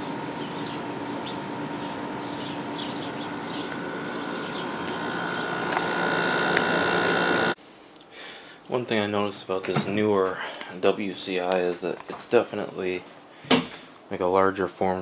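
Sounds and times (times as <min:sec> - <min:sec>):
faint birds chirping: 0:00.0 - 0:07.0
high steady tones: 0:00.0 - 0:07.6
window air conditioner running: 0:00.0 - 0:07.6.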